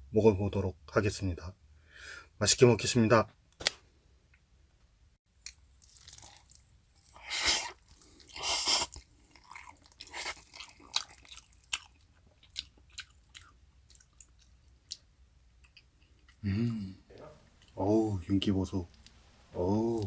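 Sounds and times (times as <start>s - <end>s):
wet chewing and lip-smacking: 5.4s - 16.4s.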